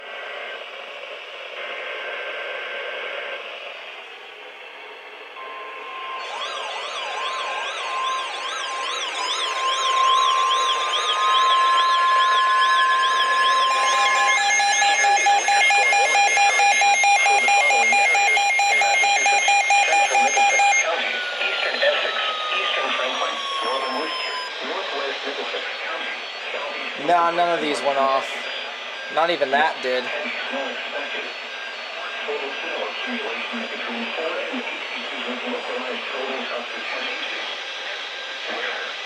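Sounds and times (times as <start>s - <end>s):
steady warning alarm tone: 4.7s - 39.0s
warbling siren-like alarm: 5.0s - 36.6s
data-burst header tones: 5.4s - 21.5s
rapid pulsed beeping: 5.4s - 35.8s.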